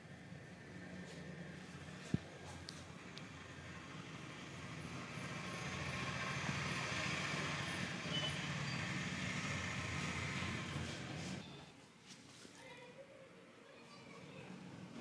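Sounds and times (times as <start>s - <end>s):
heavy vehicle engine hum: 0.0s - 11.5s
road noise: 0.0s - 12.0s.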